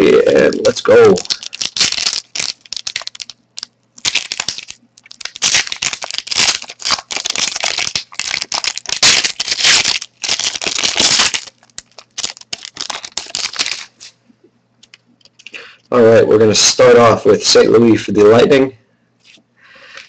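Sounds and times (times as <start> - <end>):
wrapper tearing and crinkling: 0.0 - 14.2.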